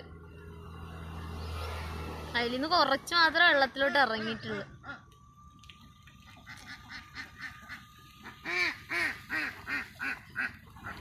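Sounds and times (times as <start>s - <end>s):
ducks quacking: 3.8s - 5.1s, 6.2s - 11.0s.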